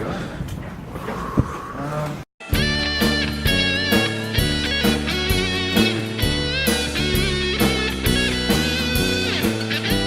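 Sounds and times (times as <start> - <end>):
background music with electric guitar: 2.4 - 10.0.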